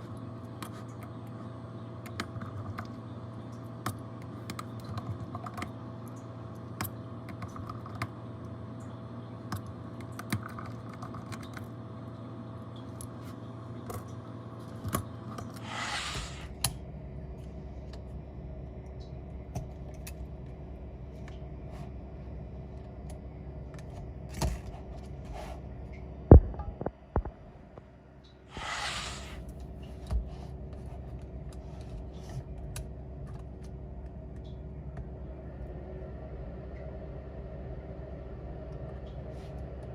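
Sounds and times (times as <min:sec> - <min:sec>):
steady hum: 0:11.5 - 0:39.9
short hisses: 0:15.6 - 0:16.5, 0:28.5 - 0:29.4.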